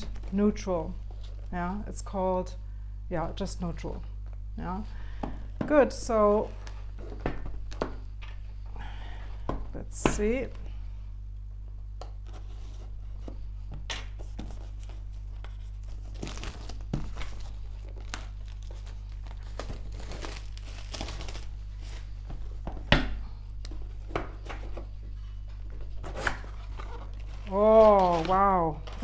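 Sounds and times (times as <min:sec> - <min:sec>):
low electrical hum: 0:00.0 - 0:29.0
plastic and cardboard crinkling: 0:14.1 - 0:22.7, 0:25.9 - 0:29.0.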